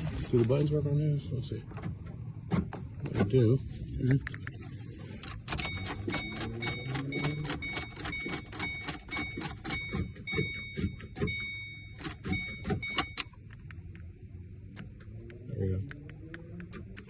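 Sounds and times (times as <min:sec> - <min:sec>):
car warning chime dinging: 0:05.3 - 0:13.8.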